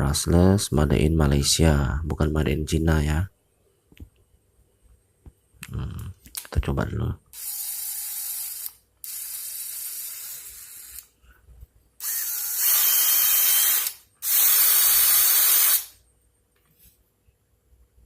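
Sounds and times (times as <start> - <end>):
cordless drill running: 7.4 - 11.0, 12.0 - 15.9.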